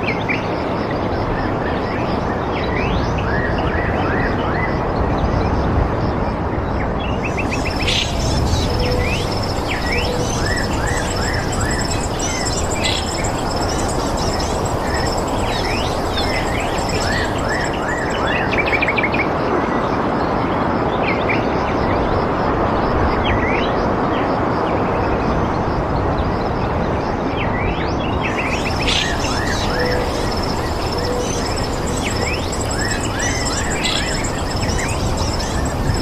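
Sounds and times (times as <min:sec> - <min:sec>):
steady rushing noise: 0:05.6 - 0:19.5, 0:28.0 - 0:36.0
birds chirping: 0:07.2 - 0:18.8, 0:28.1 - 0:36.0
high fast pulsing trill: 0:07.3 - 0:18.2, 0:28.3 - 0:36.0.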